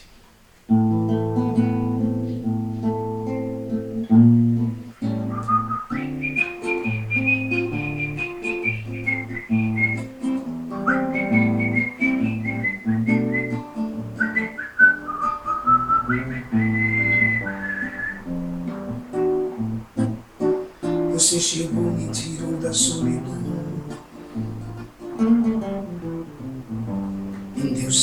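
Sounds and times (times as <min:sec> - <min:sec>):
acoustic guitar chords: 0:00.0 - 0:28.0
whistled melody: 0:04.1 - 0:21.1.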